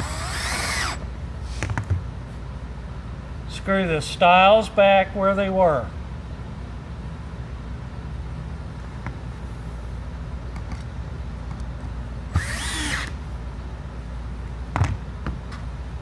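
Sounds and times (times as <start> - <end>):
power drill driving a screw: 0.0 - 1.0, 12.3 - 13.2
steady low hum: 0.0 - 16.0.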